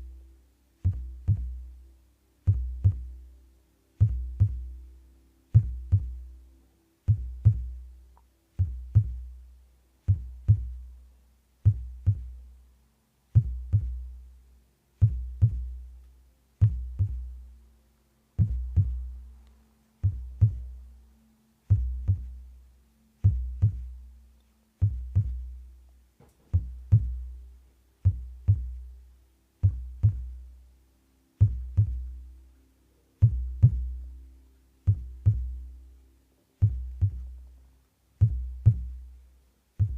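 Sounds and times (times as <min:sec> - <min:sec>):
slow heartbeat double thump: 0:00.8 - 0:01.6, 0:02.5 - 0:03.1, 0:04.0 - 0:04.7, 0:05.6 - 0:06.2, 0:07.1 - 0:07.8, 0:08.6 - 0:09.3, 0:10.1 - 0:10.8, 0:11.7 - 0:12.4, 0:13.4 - 0:14.1, 0:15.0 - 0:15.7, 0:16.6 - 0:17.3, 0:18.4 - 0:19.1, 0:20.0 - 0:20.8, 0:21.7 - 0:22.4, 0:23.2 - 0:23.9, 0:24.8 - 0:25.5, 0:26.5 - 0:27.3, 0:28.1 - 0:28.8, 0:29.6 - 0:30.4, 0:31.4 - 0:32.1, 0:33.2 - 0:33.9, 0:34.9 - 0:35.6, 0:36.6 - 0:37.3, 0:38.2 - 0:39.0.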